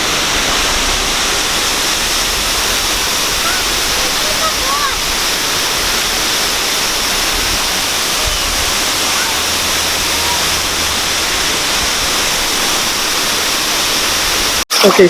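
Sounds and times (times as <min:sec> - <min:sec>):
waterfall rushing: 0:00.0 - 0:15.0.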